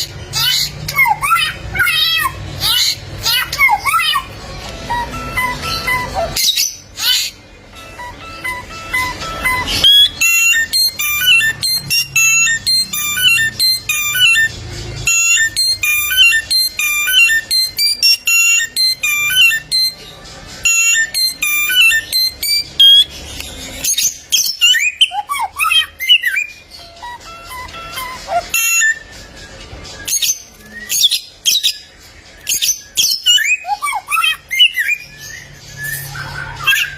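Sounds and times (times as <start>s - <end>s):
bird singing: 0.0s - 36.9s.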